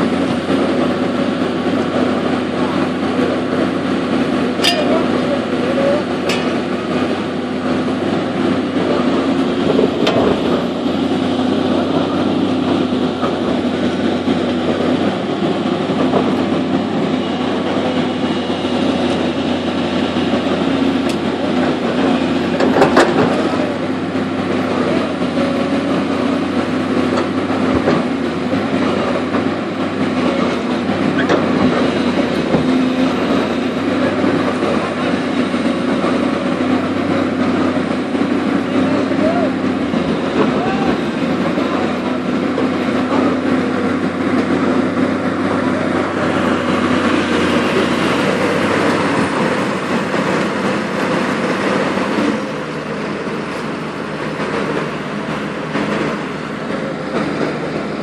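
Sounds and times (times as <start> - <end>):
heavy machinery engine rumble: 0.0 - 58.0
sharp metal clanks: 4.6 - 5.1.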